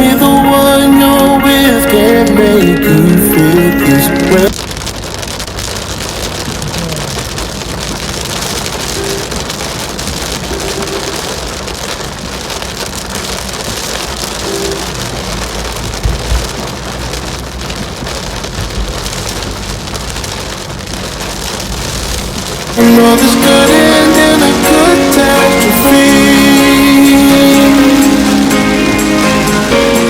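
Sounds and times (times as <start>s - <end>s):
heavy rain pattering: 0.0s - 30.0s
low thump: 16.0s - 16.6s.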